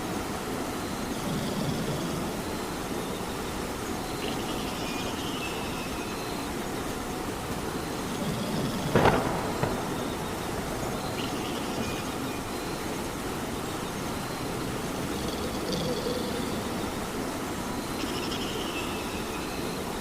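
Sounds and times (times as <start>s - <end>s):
steady rain: 0.0s - 20.0s
loud crack: 8.9s - 11.1s.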